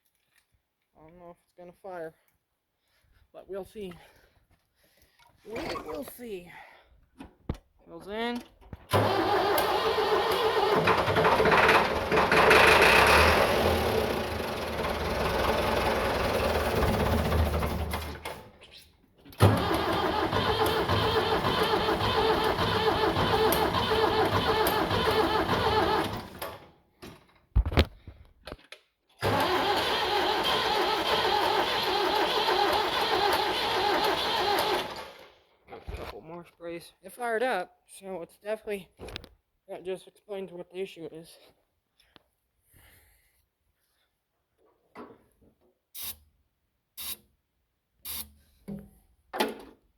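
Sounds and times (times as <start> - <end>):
engine firing: 8.9 - 18.5, 19.4 - 26.6, 29.2 - 35.3
diesel engine cranking on starter: 8.9 - 18.6, 19.3 - 26.8, 29.2 - 35.4.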